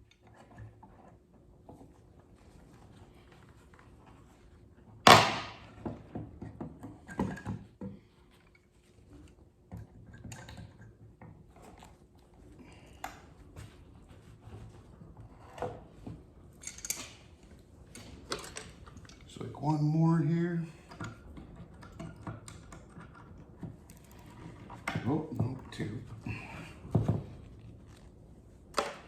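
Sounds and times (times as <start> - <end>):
sharp loud knock: 5.1 - 5.6.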